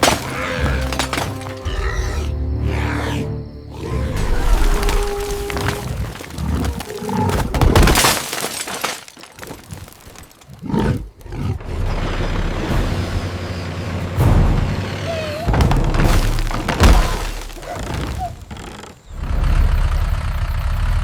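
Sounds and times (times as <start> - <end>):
crashing and breaking impacts: 0.0 - 2.3, 4.2 - 10.8, 11.6 - 18.4
roar-like sounds: 0.0 - 7.9, 10.5 - 20.3.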